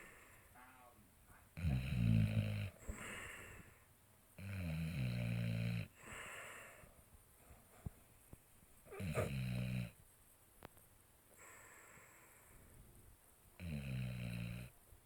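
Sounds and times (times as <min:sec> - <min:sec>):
soft breath out: 0:00.0 - 0:00.6, 0:02.8 - 0:03.9, 0:06.0 - 0:07.1, 0:11.3 - 0:13.0
loud buzzing snores: 0:01.6 - 0:02.8, 0:04.4 - 0:05.9, 0:08.9 - 0:10.0, 0:13.6 - 0:14.7.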